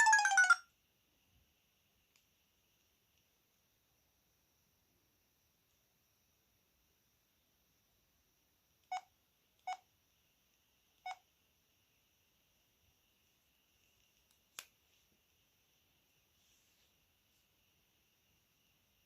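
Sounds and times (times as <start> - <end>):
phone keypad beeps: 0.0 - 0.6.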